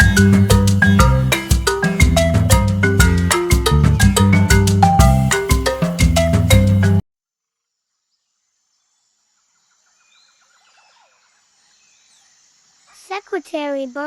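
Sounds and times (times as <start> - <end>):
short whistled calls: 0.0 - 2.5
chirps of birds or insects: 0.0 - 3.5, 7.4 - 14.0
marimba music: 0.0 - 7.0.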